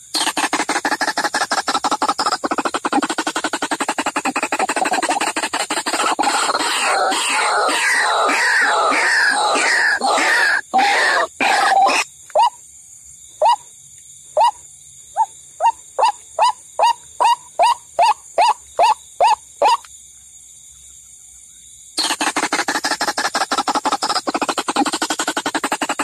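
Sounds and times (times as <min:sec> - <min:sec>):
bird calls sliding downward: 0:00.2 - 0:12.5, 0:22.0 - 0:26.0.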